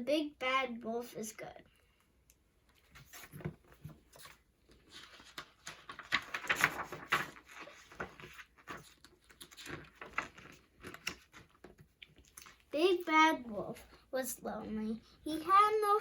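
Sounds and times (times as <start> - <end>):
paper rustling: 2.7 - 12.7.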